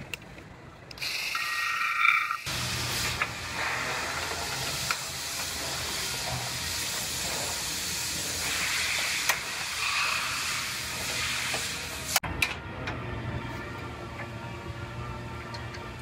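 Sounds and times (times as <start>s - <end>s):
welding hiss: 1.0s - 12.2s.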